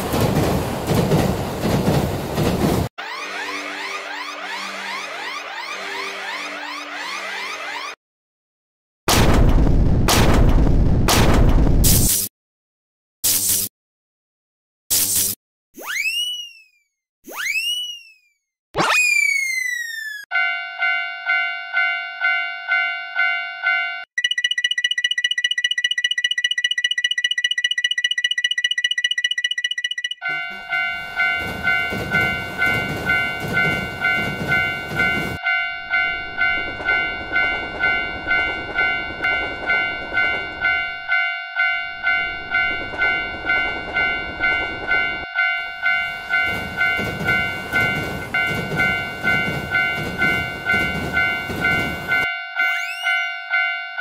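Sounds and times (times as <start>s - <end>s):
passing train rumble: 0.0s - 2.9s, 30.5s - 41.2s, 41.8s - 52.3s
lower crossing bell dinging: 20.3s - 54.0s
high electronic crossing ding: 39.7s - 54.0s.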